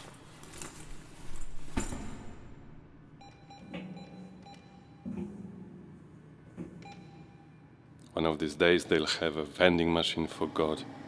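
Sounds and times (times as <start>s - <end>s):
handling rustle: 0.0s - 1.9s.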